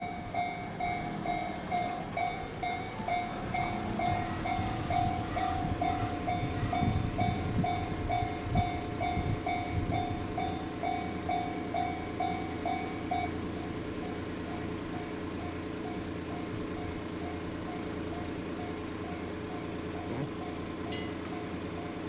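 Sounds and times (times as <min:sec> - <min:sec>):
level crossing bell ringing: 0:00.0 - 0:13.4
train rumbling: 0:00.0 - 0:22.0.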